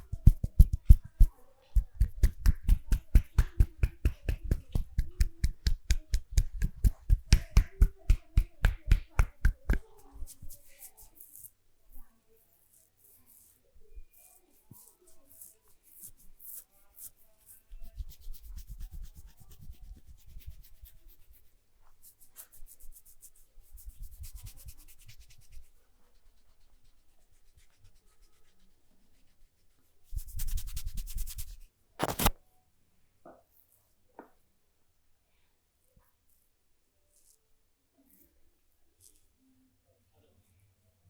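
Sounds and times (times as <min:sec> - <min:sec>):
hands rubbing skin: 0:00.0 - 0:11.5, 0:14.2 - 0:32.4.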